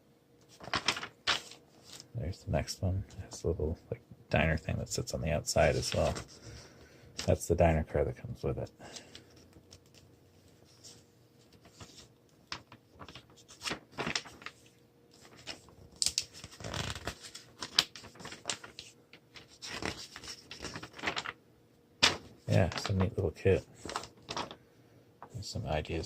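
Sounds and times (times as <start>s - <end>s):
paper pages rustling: 0.4s - 2.1s, 5.6s - 7.4s, 8.9s - 21.4s, 22.0s - 24.6s.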